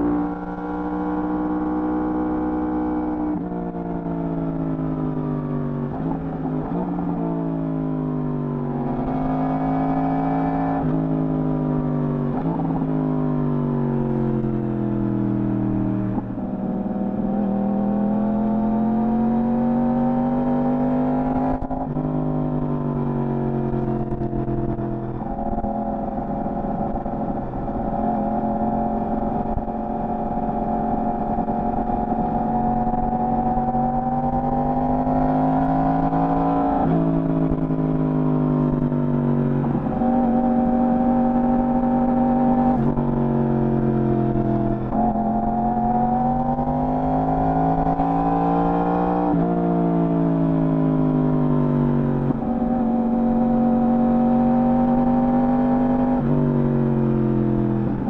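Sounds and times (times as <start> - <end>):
motorcycle engine revving: 23.0 - 51.2.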